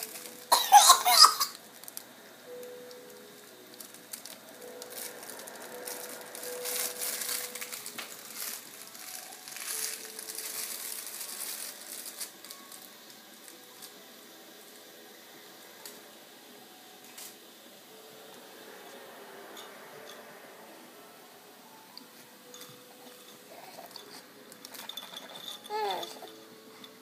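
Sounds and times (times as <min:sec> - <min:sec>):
rustling and crinkling in crib: 0:00.0 - 0:14.0, 0:22.0 - 0:27.0.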